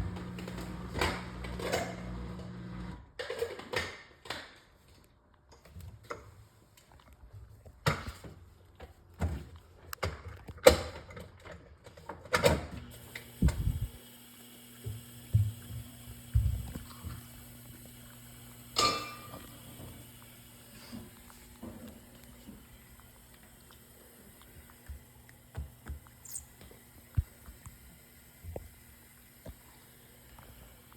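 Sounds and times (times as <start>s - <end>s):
faint steady hum: 13.0s - 30.9s
dishes and utensils clacking: 18.8s - 19.5s.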